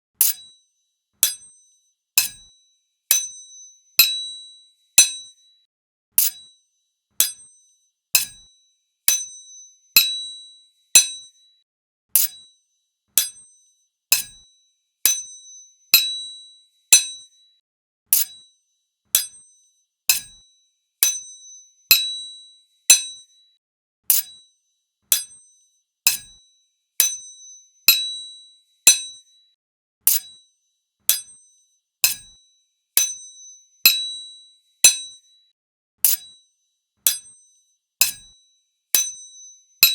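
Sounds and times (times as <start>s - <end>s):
sword blades clashing: 38.0s - 38.3s.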